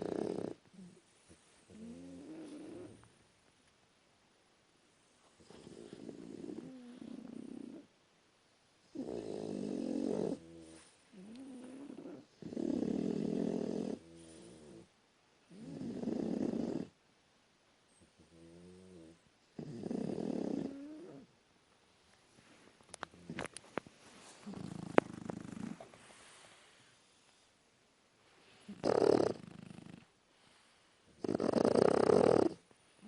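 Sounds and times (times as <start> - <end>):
loud rasping snores: 0.0 - 1.0, 8.9 - 14.9, 15.5 - 17.0, 18.4 - 21.3, 28.7 - 30.1, 31.2 - 32.6.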